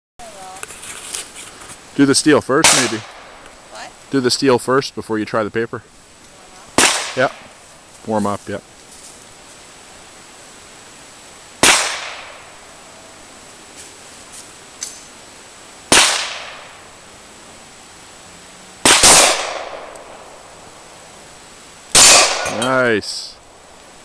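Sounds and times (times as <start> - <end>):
pistol shots reverberating: 11.6 - 12.4, 18.8 - 20.2, 22.0 - 22.6.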